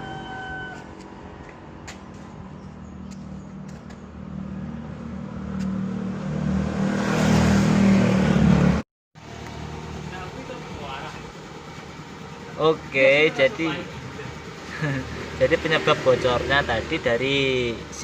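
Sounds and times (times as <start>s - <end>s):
vehicle engine humming: 0.0s - 18.0s.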